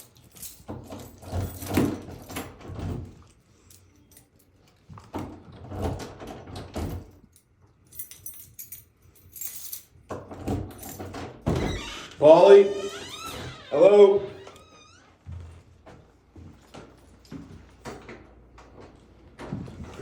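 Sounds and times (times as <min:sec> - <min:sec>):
keys jangling: 0:00.0 - 0:05.3, 0:06.6 - 0:11.4.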